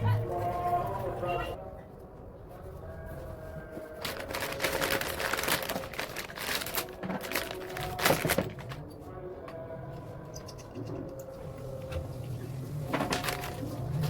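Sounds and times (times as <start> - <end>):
small hard objects clattering: 4.0 - 8.8.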